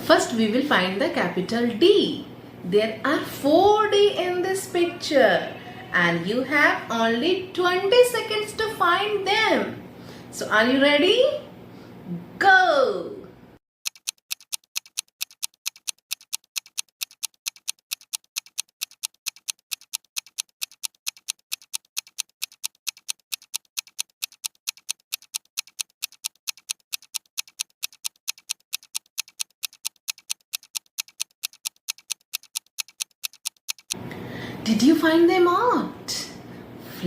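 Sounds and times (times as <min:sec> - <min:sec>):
clock ticking: 0:13.8 - 0:34.0.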